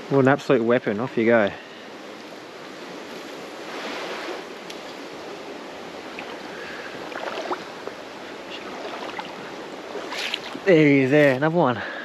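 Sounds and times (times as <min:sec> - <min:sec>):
creek water running over rocks: 0:00.1 - 0:11.8.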